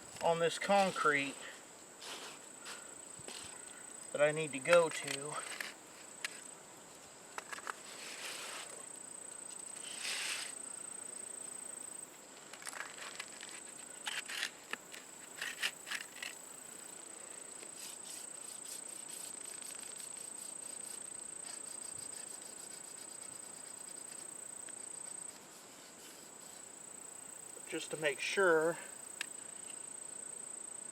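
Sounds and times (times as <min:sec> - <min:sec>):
insects buzzing: 0:00.0 - 0:30.9
short scraping sounds: 0:02.0 - 0:03.5, 0:07.5 - 0:08.8, 0:09.8 - 0:10.6.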